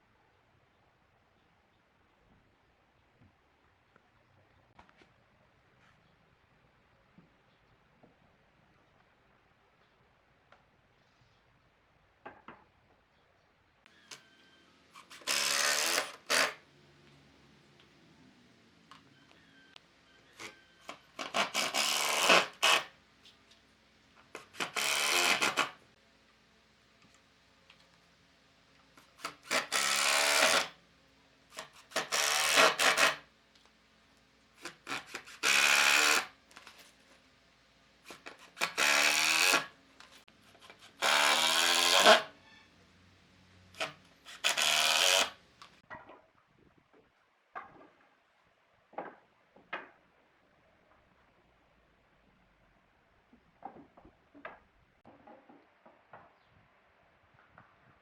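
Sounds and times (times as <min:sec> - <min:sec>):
hand tool scraping wood: 0:15.0 - 0:16.6, 0:20.2 - 0:22.9, 0:24.3 - 0:25.8, 0:29.0 - 0:30.8, 0:31.5 - 0:33.2, 0:34.6 - 0:37.0, 0:38.1 - 0:42.3.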